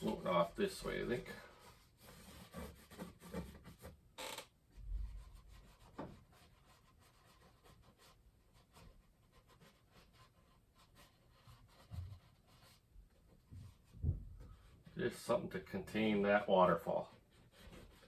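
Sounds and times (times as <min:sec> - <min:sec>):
painting knife scraping canvas: 0:00.0 - 0:04.1, 0:05.0 - 0:13.3, 0:16.4 - 0:18.0
dull knock: 0:13.5 - 0:14.6.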